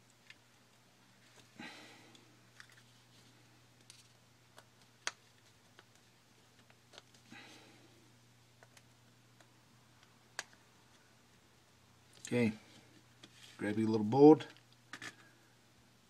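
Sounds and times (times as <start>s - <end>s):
low steady hum: 0.0s - 16.0s
soft rustle: 12.2s - 13.8s.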